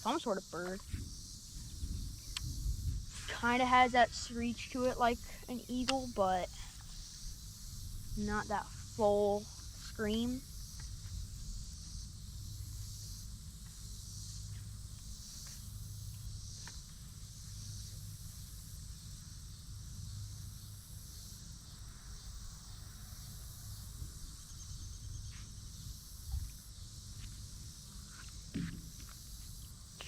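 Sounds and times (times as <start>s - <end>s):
short thump: 28.5s - 29.1s.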